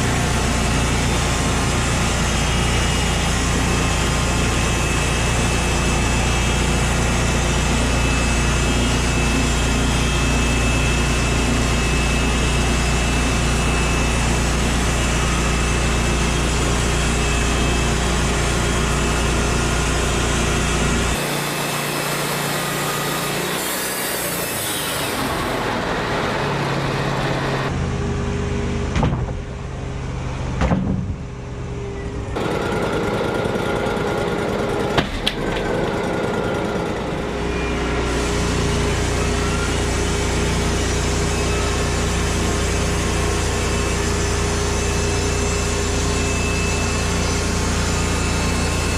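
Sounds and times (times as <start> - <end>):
engine running with low hum: 0.0 - 23.4, 24.5 - 48.9
sharp knocks: 28.9 - 29.5, 30.6 - 31.2.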